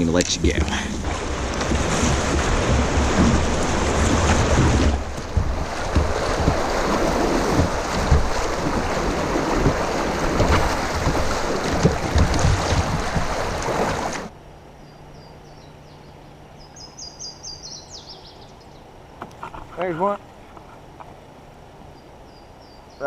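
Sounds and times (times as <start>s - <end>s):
wind buffeting microphone: 0.0s - 14.3s
water rushing through rapids: 0.7s - 14.3s.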